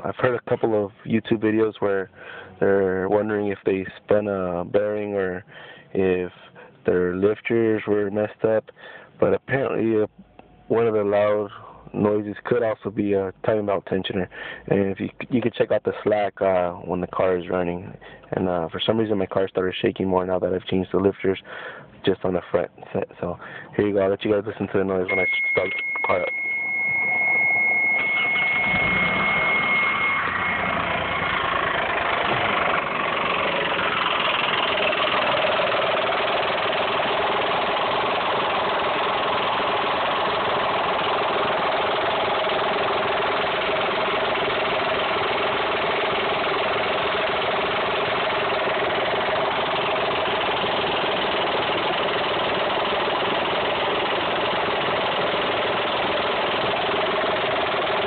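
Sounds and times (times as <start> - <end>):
car engine starting and running: 24.6 - 58.0
steady high beep: 25.1 - 32.8.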